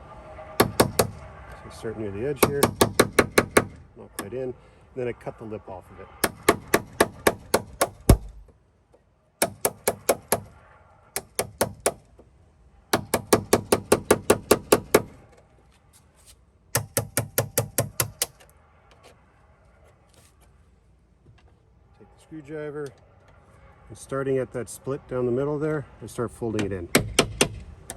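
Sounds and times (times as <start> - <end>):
hammer striking chisel: 0.6 - 1.2, 2.4 - 3.8, 6.2 - 8.4, 9.4 - 10.5, 11.2 - 12.1, 12.9 - 15.2, 16.8 - 18.4, 26.9 - 27.6.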